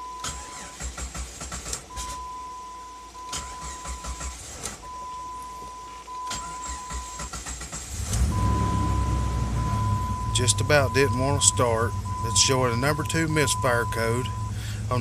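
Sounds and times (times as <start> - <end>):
engine cranking by starter: 0.0 - 2.4, 3.2 - 5.0, 6.2 - 15.0.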